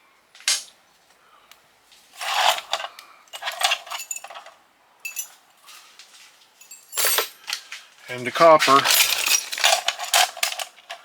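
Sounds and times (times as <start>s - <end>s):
scrap metal pieces clinking: 2.2s - 5.4s, 6.6s - 11.0s.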